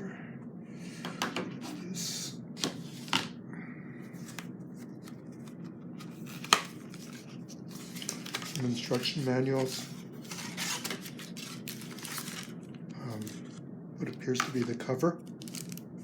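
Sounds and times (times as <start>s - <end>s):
paper and cardboard rustling: 4.2s - 13.6s, 15.4s - 15.8s.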